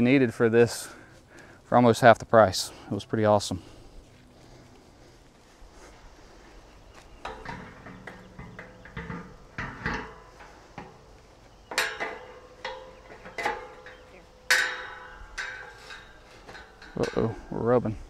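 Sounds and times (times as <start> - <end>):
metallic clanks and knocks: 7.2 - 18.0.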